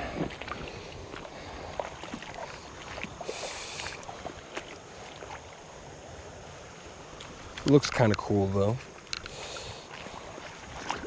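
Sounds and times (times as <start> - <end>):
river water rushing: 0.0 - 7.4, 9.3 - 11.0
light clicks and taps: 7.2 - 8.3.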